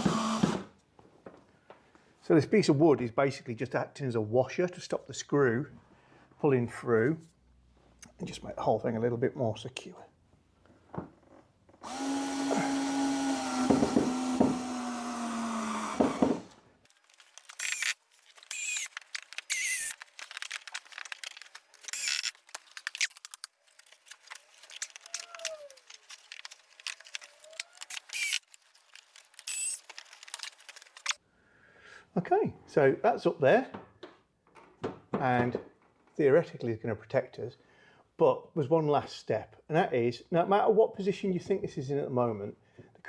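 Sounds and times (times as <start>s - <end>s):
power drill driving screw into wood: 0.0s - 0.7s, 11.8s - 16.5s, 17.5s - 20.0s, 21.9s - 22.3s, 27.1s - 28.5s, 29.3s - 31.2s
handling clicks and knocks: 16.9s - 31.2s.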